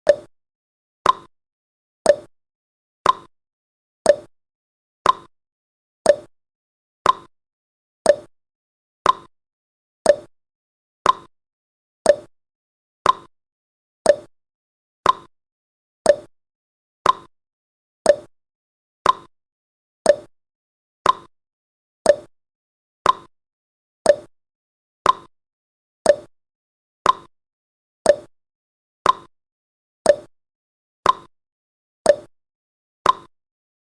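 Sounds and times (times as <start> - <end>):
timer ticking: 0.0 - 0.3, 1.0 - 1.3, 2.1 - 2.3, 3.0 - 3.3, 4.0 - 4.3, 5.0 - 5.3, 6.0 - 6.3, 7.0 - 7.3, 8.1 - 8.3, 9.0 - 9.3, 10.0 - 10.3, 11.0 - 11.3, 12.0 - 12.3, 13.0 - 13.3, 14.0 - 14.3, 15.0 - 15.3, 16.0 - 16.3, 17.0 - 17.3, 18.1 - 18.3, 19.0 - 19.3, 20.1 - 20.3, 21.0 - 21.3, 22.1 - 22.3, 23.0 - 23.3, 24.1 - 24.3, 25.0 - 25.3, 26.0 - 26.3, 27.0 - 27.3, 28.1 - 28.3, 29.0 - 29.3, 30.1 - 30.3, 31.0 - 31.3, 32.1 - 32.3, 33.0 - 33.3.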